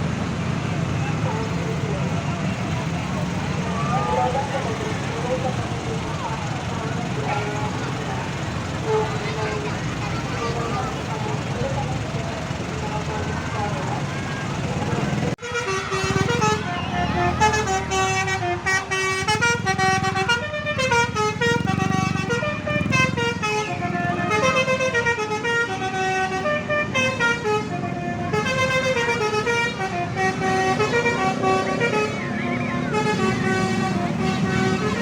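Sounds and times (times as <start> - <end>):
musical air horn melodies: 15.4 - 35.0.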